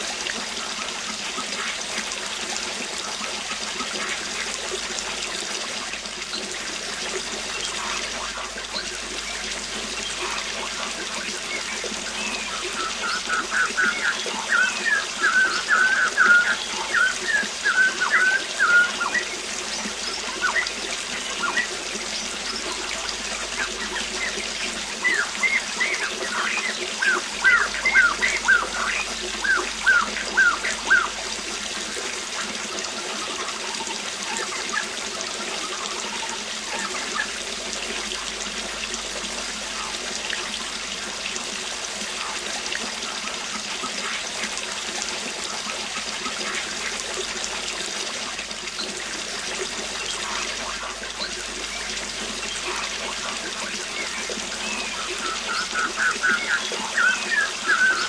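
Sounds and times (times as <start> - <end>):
waterfall rushing: 0.0 - 58.0
birds chirping: 7.2 - 32.5, 49.9 - 58.0.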